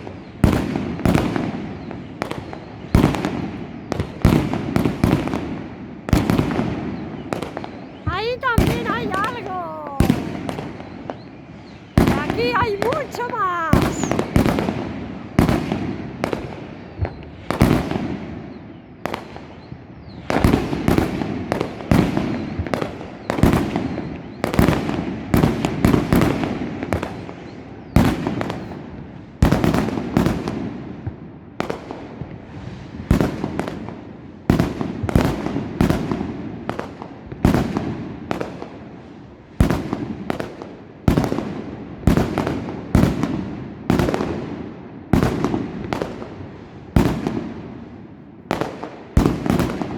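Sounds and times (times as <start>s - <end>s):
fireworks banging: 7.4s - 11.2s, 12.0s - 14.8s.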